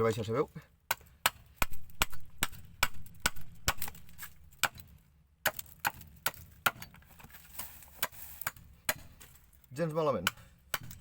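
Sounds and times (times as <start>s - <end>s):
hatchet chopping wood: 0.8s - 7.2s, 7.9s - 9.4s, 10.2s - 11.0s.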